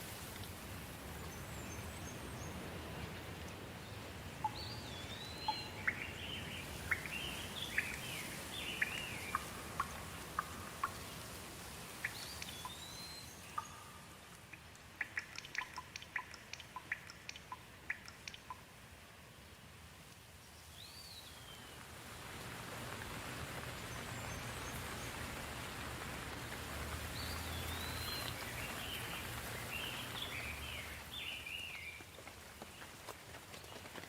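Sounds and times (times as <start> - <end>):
steady rain: 0.0 - 34.0
birds chirping: 3.8 - 11.3, 12.0 - 18.6, 27.1 - 32.0
water drips plinking: 4.4 - 18.8, 26.3 - 32.0.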